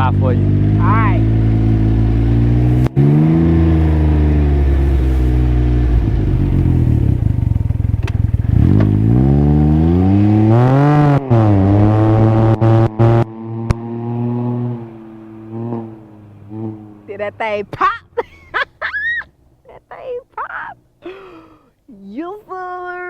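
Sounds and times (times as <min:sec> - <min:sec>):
engine revving hard: 0:00.0 - 0:17.0.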